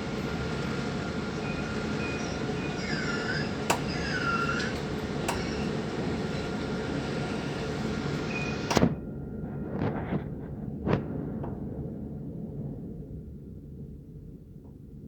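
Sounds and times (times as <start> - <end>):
tram rumbling: 0.0 - 14.9
short squealing tones: 2.7 - 4.8.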